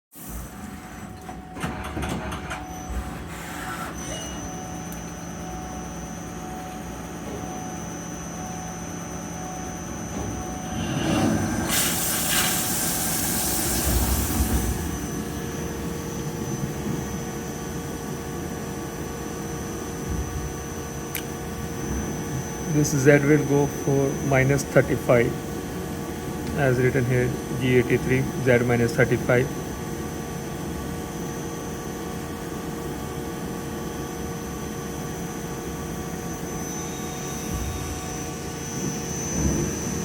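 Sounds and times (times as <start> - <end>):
lathe motor running with whine: 2.6 - 40.0
loud hissing: 10.9 - 14.6.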